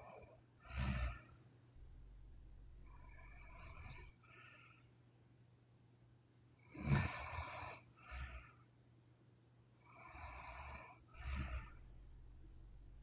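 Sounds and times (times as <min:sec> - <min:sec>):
woman snoring: 0:00.7 - 0:01.3, 0:06.8 - 0:08.3, 0:10.0 - 0:11.8.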